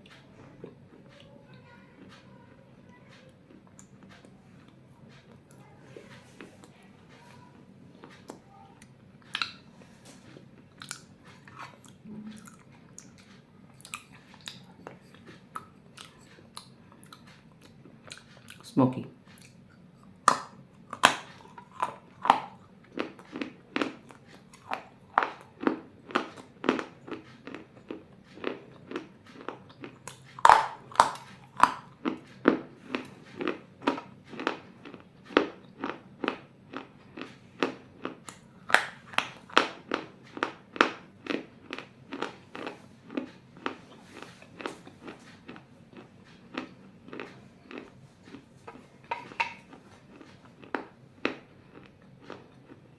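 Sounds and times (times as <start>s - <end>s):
clay pieces crunched by chewing: 19.3s - 52.9s.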